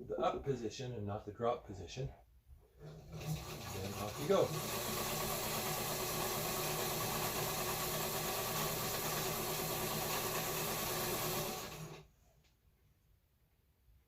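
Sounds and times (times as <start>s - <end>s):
sewing machine stitching: 2.8s - 12.1s.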